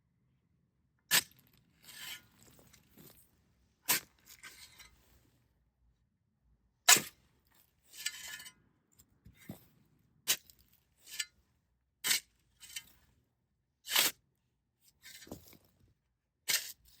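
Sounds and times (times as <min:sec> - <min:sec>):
shovel striking gravelly dirt: 0:01.1 - 0:03.2, 0:03.9 - 0:05.0, 0:06.9 - 0:07.2, 0:10.3 - 0:11.4, 0:12.0 - 0:13.0, 0:13.9 - 0:14.2, 0:15.1 - 0:15.6, 0:16.5 - 0:17.0
shovel scraping soil: 0:01.1 - 0:03.3, 0:03.9 - 0:05.2, 0:06.9 - 0:07.2, 0:07.9 - 0:08.5, 0:09.3 - 0:09.7, 0:10.3 - 0:11.4, 0:12.0 - 0:13.1, 0:13.9 - 0:14.2, 0:15.0 - 0:15.8, 0:16.5 - 0:17.0.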